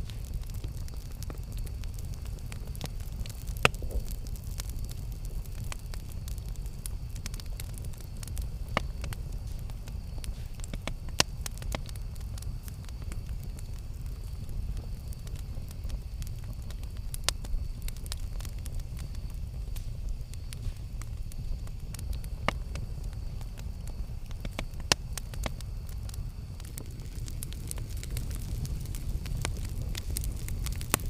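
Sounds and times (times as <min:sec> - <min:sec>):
campfire crackling: 0:00.0 - 0:31.0.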